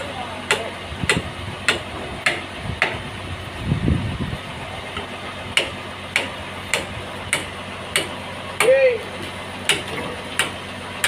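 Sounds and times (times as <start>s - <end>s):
sawmill engine hum: 0.0s - 11.0s
low rumble: 0.9s - 4.9s.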